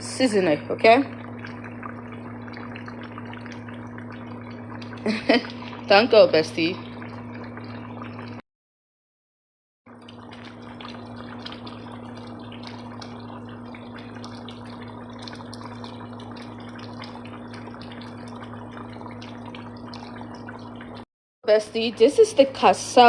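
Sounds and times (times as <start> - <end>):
air conditioner humming: 0.0 - 8.1, 21.5 - 23.0
water bubbling and splashing: 0.0 - 8.4, 9.9 - 23.0.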